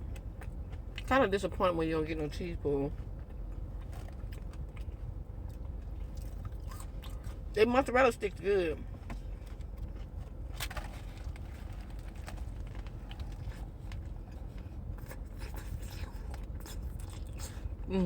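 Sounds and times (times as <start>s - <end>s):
person chewing: 2.9s - 7.5s, 12.6s - 17.8s.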